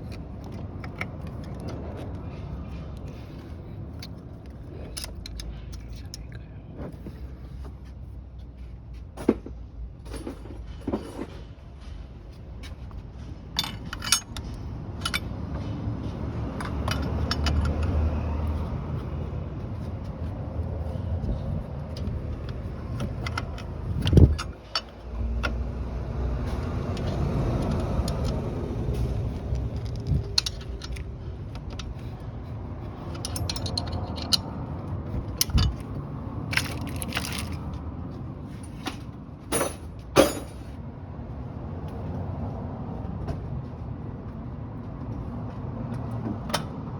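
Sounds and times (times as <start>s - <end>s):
vehicle low rumble: 0.0s - 46.9s
sharp rattles and knocks: 13.2s - 18.1s, 21.9s - 37.8s.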